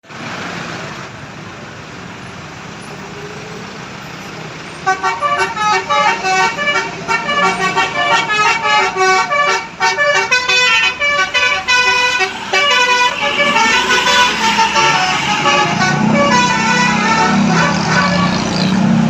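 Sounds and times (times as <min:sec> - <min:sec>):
musical bus air horn: 0:04.8 - 0:18.7
rushing noise: 0:05.4 - 0:19.0.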